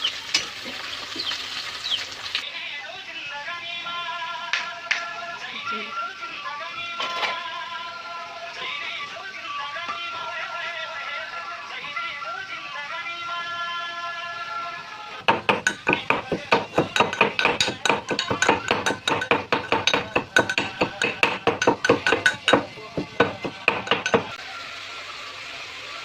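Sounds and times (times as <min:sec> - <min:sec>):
kitchen utensil knocking and clinking: 0:15.3 - 0:24.4.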